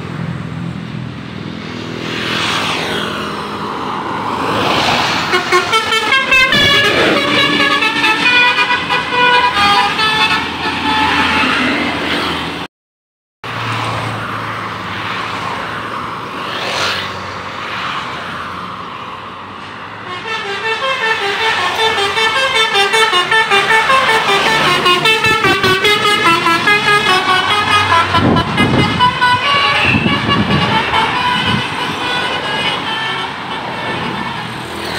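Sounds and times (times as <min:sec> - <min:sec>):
road traffic noise: 0:00.0 - 0:12.7, 0:13.4 - 0:34.9
vehicle passing: 0:01.4 - 0:12.6, 0:13.5 - 0:20.0, 0:21.5 - 0:34.9
multi-tone bus horn tune: 0:05.2 - 0:12.4, 0:20.0 - 0:34.3.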